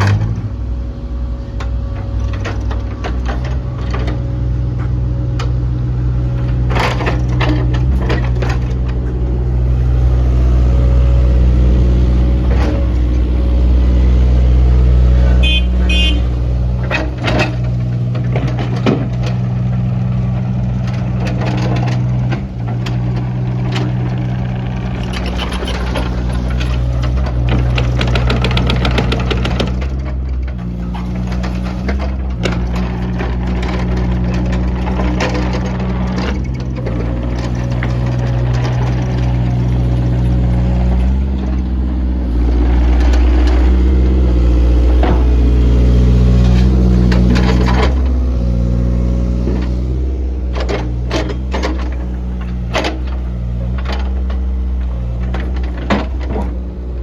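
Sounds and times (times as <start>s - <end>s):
excavator diesel engine running: 0.0s - 57.0s
short beeping: 15.4s - 16.4s
machine knocks and clatters: 25.0s - 33.0s.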